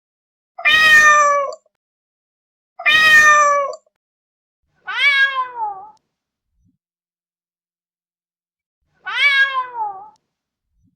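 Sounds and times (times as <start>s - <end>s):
cat meowing: 0.6s - 1.6s, 2.8s - 3.8s, 4.9s - 6.0s, 9.0s - 10.2s.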